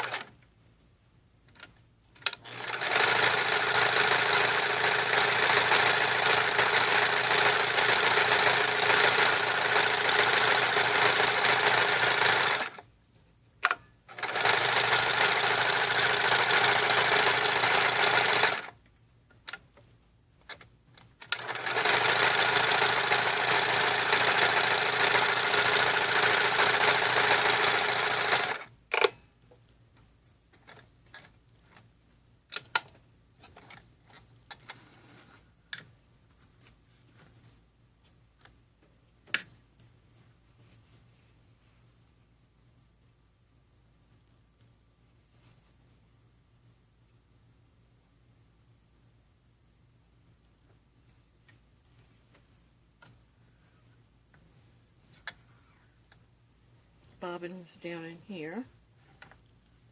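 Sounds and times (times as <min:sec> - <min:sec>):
sewing machine stitching: 0:00.0 - 0:00.3, 0:02.2 - 0:12.8, 0:13.6 - 0:18.7, 0:21.2 - 0:29.1.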